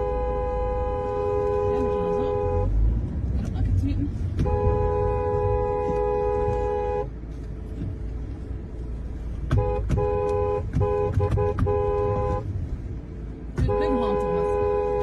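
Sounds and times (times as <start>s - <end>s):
road and engine rumble: 0.0s - 15.0s
two-note car horn: 4.4s - 7.1s, 9.6s - 12.4s.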